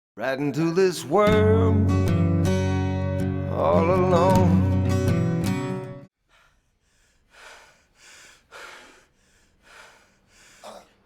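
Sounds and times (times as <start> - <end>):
person breathing heavily: 6.2 - 11.0.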